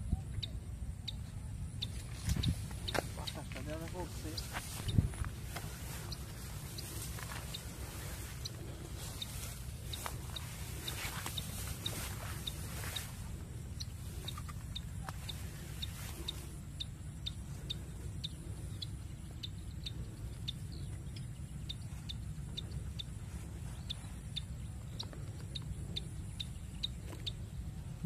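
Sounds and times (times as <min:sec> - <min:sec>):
wind buffeting microphone: 0:00.0 - 0:16.4.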